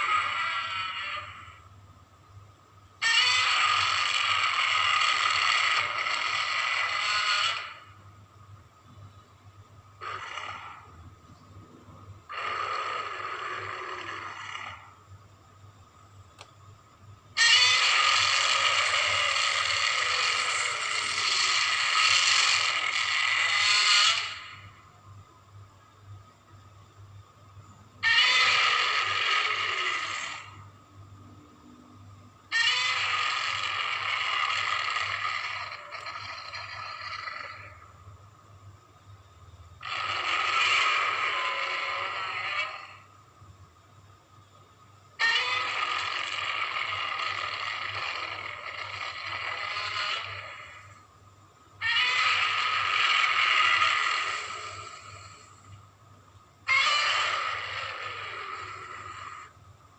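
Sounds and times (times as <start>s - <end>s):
monster roar: 17.4s - 24.6s, 28.0s - 30.6s, 32.5s - 37.8s, 39.8s - 43.0s, 45.2s - 51.0s, 51.8s - 55.5s, 56.7s - 59.5s.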